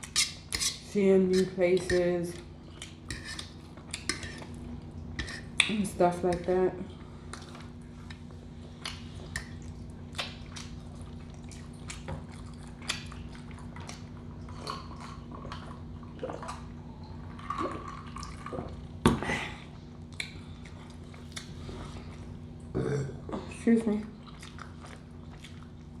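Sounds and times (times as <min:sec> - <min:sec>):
steady low hum: 0:00.0 - 0:26.0
wet chewing: 0:07.1 - 0:19.0, 0:19.7 - 0:22.7, 0:24.1 - 0:26.0
lip smacks: 0:20.1 - 0:21.6.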